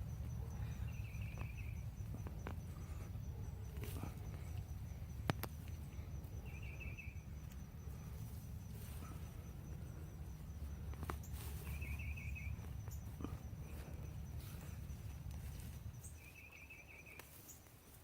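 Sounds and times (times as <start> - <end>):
low rumble: 0.0 - 16.3
faint high insect hum: 0.0 - 18.0
hands clicking in soil: 3.7 - 6.4, 10.8 - 13.4, 17.1 - 17.8
bird trilled call: 6.4 - 7.2, 11.6 - 13.0, 16.0 - 17.2.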